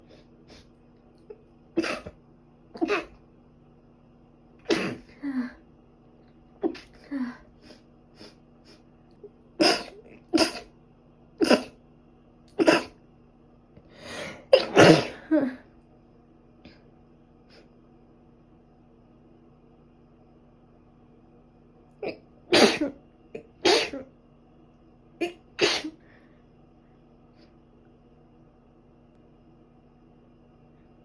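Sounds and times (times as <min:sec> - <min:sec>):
person sneezing: 0:01.8 - 0:02.2, 0:02.8 - 0:03.2, 0:04.6 - 0:05.2, 0:09.6 - 0:10.7, 0:11.4 - 0:11.8, 0:12.6 - 0:13.0, 0:14.2 - 0:15.6, 0:22.0 - 0:24.1, 0:25.2 - 0:26.0.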